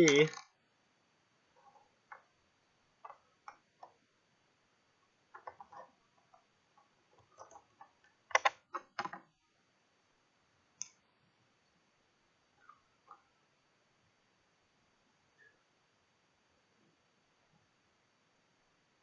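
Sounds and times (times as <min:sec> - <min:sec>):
packaging clicks and taps: 0:07.2 - 0:09.2.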